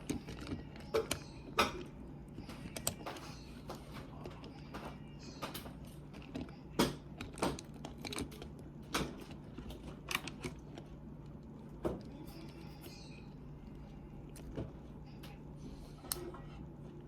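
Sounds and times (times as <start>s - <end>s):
plastic toy parts clicking: 0.0s - 3.3s, 5.4s - 10.8s
steady low hum: 0.0s - 17.0s.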